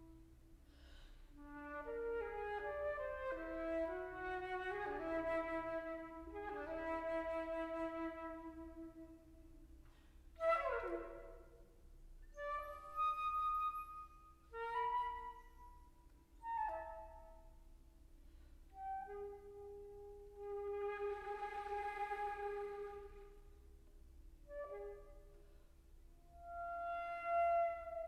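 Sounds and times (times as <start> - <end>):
solo flute playing: 1.4 - 9.4, 10.4 - 17.5, 18.8 - 23.5, 26.2 - 28.0.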